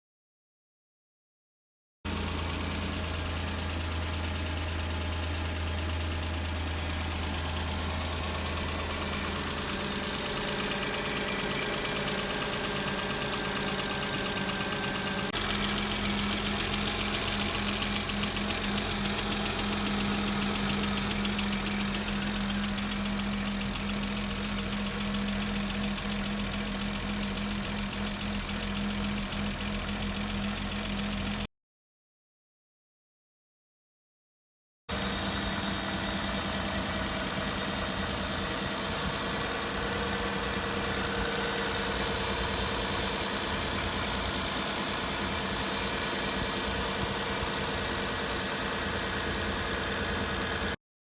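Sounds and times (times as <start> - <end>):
engine idling with ticking knock: 2.1 - 31.5, 34.9 - 50.8.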